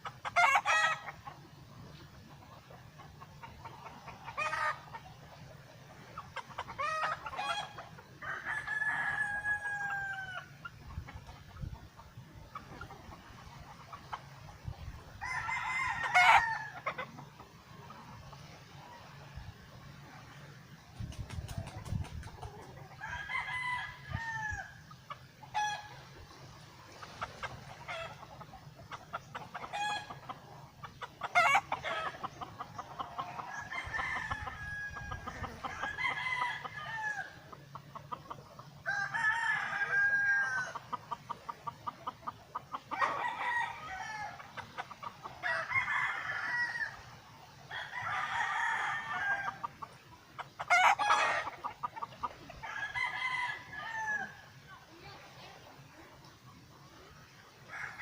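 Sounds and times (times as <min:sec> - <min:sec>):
roosters crowing: 0:00.0 - 0:01.4, 0:06.5 - 0:10.7, 0:15.0 - 0:17.3, 0:21.7 - 0:26.1, 0:29.4 - 0:54.6, 0:57.7 - 0:58.0
chickens clucking: 0:00.0 - 0:58.0.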